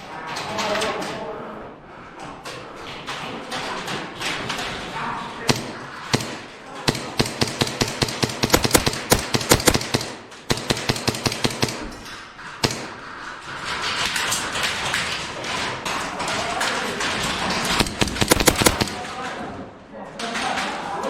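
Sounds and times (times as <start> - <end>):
airsoft gunshots: 5.5 - 12.0, 17.6 - 19.1.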